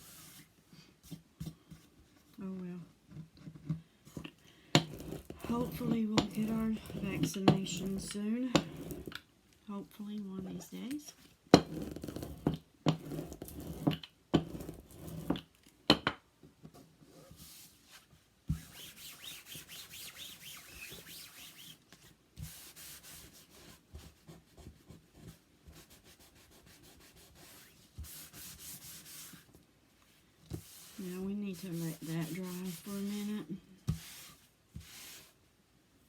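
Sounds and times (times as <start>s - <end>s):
paper rubbed by hand: 4.9s - 9.1s, 18.6s - 21.8s, 25.2s - 29.4s, 30.6s - 35.4s.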